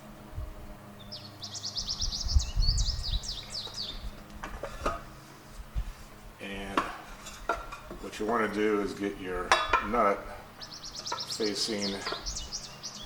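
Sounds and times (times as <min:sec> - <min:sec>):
songbird chirping: 0:00.9 - 0:04.3, 0:08.0 - 0:13.0.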